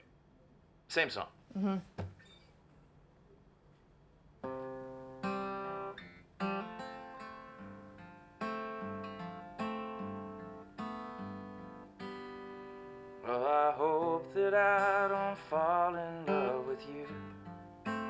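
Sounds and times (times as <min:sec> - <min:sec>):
acoustic guitar strumming chords: 0:04.4 - 0:18.0.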